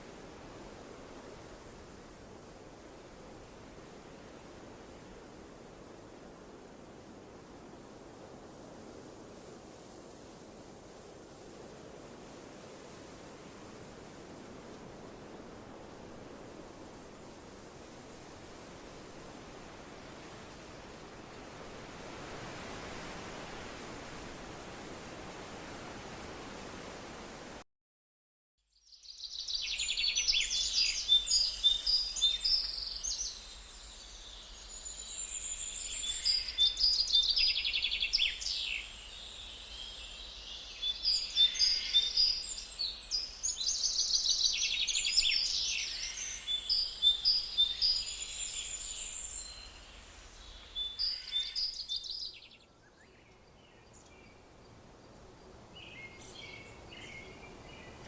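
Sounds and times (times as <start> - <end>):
birds chirping and trilling: 29.3 - 54.4.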